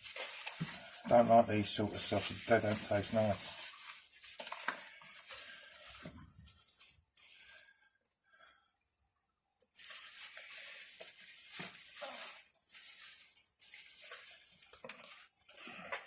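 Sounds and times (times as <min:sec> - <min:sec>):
paper packaging rustling: 0:00.0 - 0:07.8, 0:09.7 - 0:15.8.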